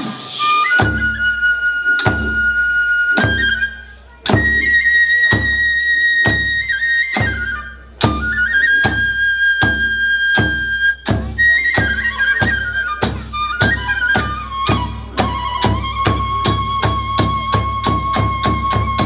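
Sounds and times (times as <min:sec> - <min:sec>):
drum strikes: 0:00.0 - 0:01.3, 0:02.0 - 0:05.6, 0:09.6 - 0:19.0
bamboo flute melody: 0:00.0 - 0:19.0.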